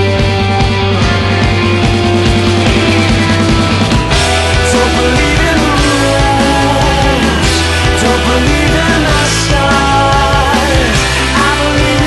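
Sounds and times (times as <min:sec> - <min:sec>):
loud rock music: 0:00.0 - 0:12.0.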